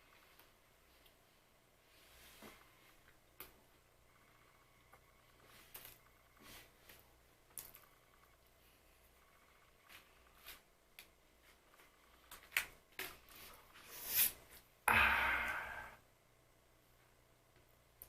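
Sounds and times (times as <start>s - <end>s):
small clicks and rustles: 2.1s - 13.9s.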